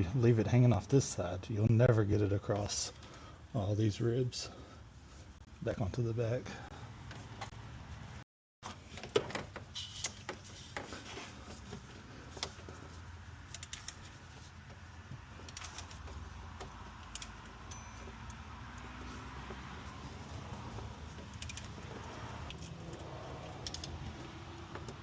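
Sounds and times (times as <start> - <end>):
tools clicking and rattling: 11.7 - 19.6, 20.2 - 25.0.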